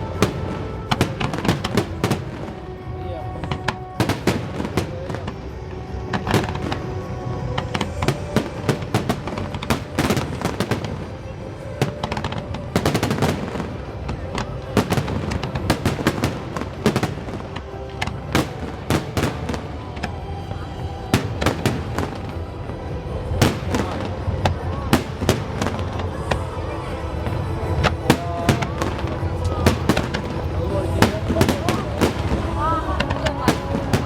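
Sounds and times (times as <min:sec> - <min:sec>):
fireworks cracks and bangs: 0:00.0 - 0:34.0
music playing: 0:00.0 - 0:34.0.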